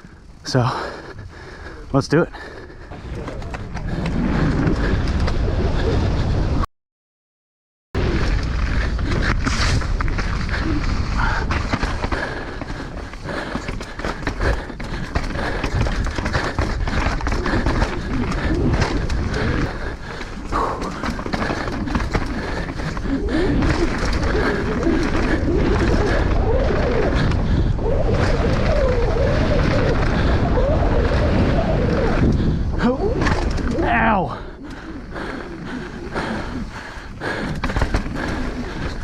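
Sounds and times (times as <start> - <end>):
wind on microphone: 8.0 - 39.0
bike knocks and rattles: 8.7 - 26.3, 35.6 - 39.0.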